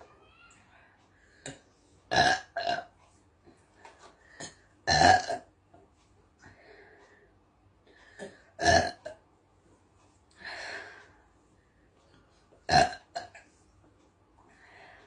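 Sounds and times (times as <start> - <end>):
girl burping: 1.5 - 2.9, 4.4 - 5.5, 8.2 - 9.0, 12.7 - 13.4.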